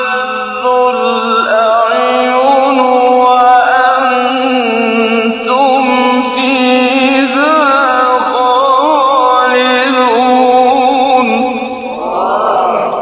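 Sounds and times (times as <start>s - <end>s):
man chanting: 0.0s - 13.0s.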